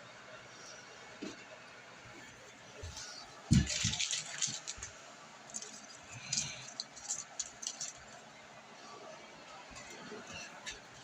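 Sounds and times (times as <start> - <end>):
kitchen things clattering: 3.5 - 8.2.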